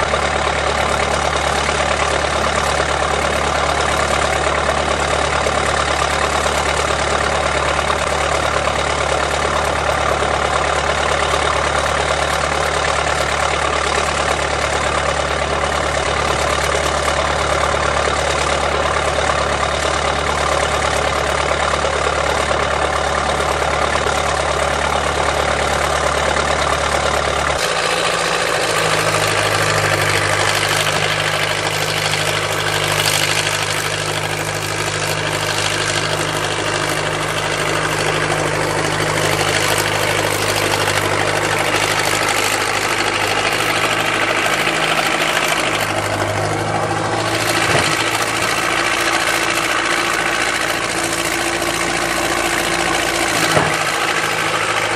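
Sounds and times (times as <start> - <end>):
backhoe engine running: 0.0 - 54.9.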